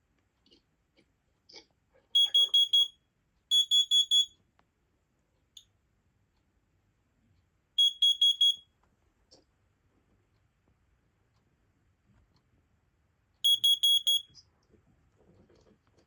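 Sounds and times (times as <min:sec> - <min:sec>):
alarm beeping: 0:02.2 - 0:04.3, 0:07.8 - 0:08.6, 0:13.4 - 0:14.3.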